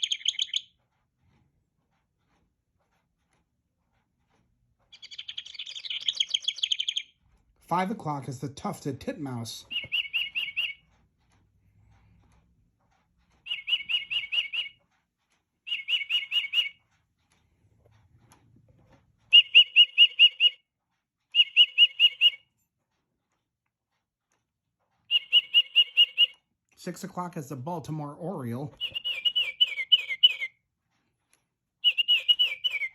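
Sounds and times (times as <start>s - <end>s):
bird song from clock speaker: 0.0s - 0.9s, 4.9s - 7.2s, 8.0s - 11.0s, 13.4s - 14.9s, 15.6s - 16.9s, 19.3s - 20.7s, 21.3s - 22.6s, 25.1s - 30.7s, 31.8s - 32.9s.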